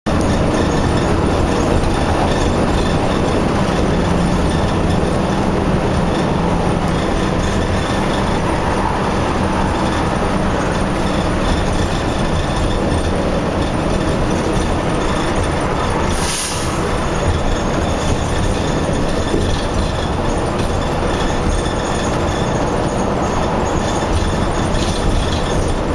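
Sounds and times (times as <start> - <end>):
heavy diesel engines rumbling: 0.0 - 25.9.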